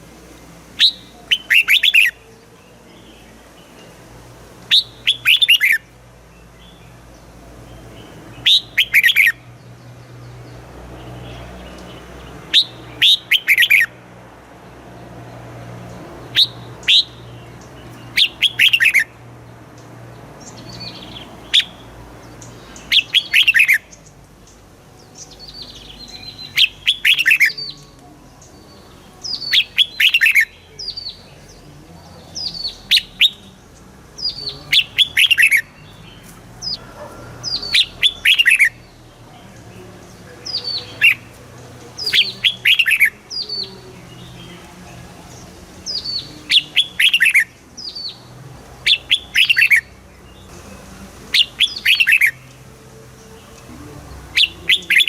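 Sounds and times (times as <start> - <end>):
bird whistled song: 0.8 - 2.3, 4.7 - 6.0, 8.0 - 9.6, 11.7 - 14.0, 16.3 - 19.2, 20.5 - 21.8, 22.4 - 24.1, 25.0 - 31.7, 32.4 - 33.5, 34.2 - 39.0, 40.4 - 41.4, 42.0 - 44.7, 45.9 - 48.2, 48.8 - 50.6, 51.3 - 52.6, 54.3 - 55.0.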